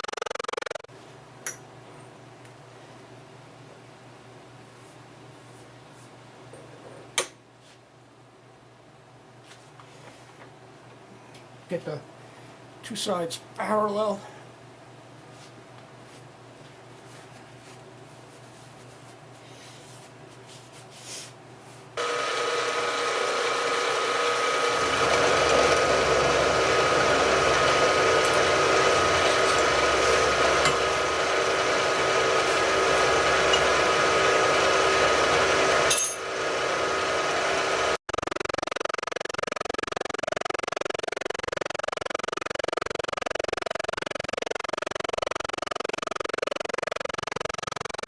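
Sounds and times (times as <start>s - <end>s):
milling machine cutting metal: 22.0s - 38.0s.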